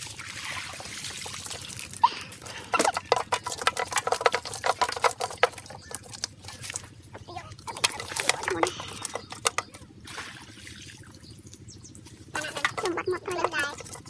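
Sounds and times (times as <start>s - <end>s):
water splashing: 0.0s - 2.8s, 10.0s - 11.3s.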